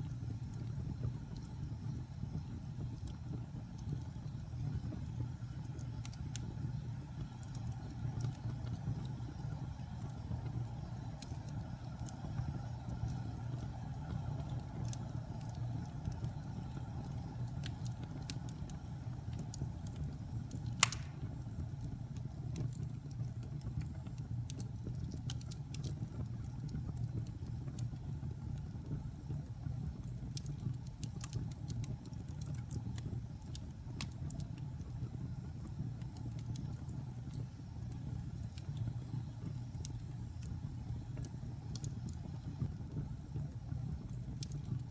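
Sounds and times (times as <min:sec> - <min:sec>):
fire crackling: 0:00.0 - 0:44.9
loud pop of burning wood: 0:20.7 - 0:21.5.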